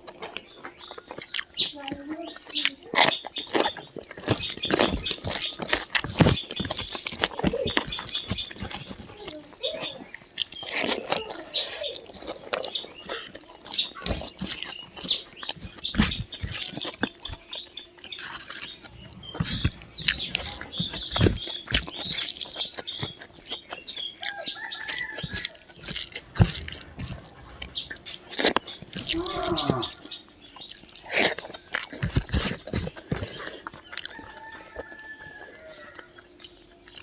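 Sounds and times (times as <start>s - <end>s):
wet chewing smacks: 0.0s - 37.0s.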